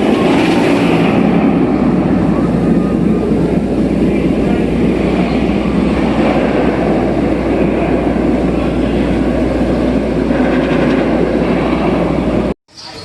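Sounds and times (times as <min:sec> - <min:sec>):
train car rumbling: 0:00.0 - 0:13.0.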